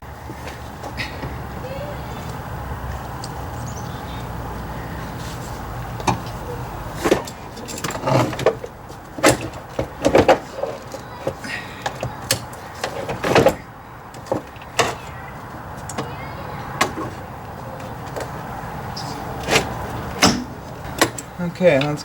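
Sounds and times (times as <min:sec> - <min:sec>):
clunks of plastic and metal parts: 0:06.0 - 0:15.2, 0:15.8 - 0:16.2, 0:16.8 - 0:18.4, 0:19.4 - 0:22.0.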